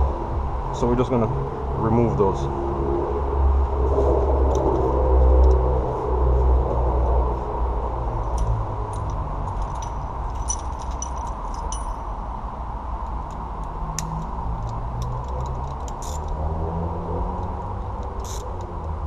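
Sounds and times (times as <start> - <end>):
low rumble: 0.0 - 19.0
hand tools clinking: 8.2 - 12.2.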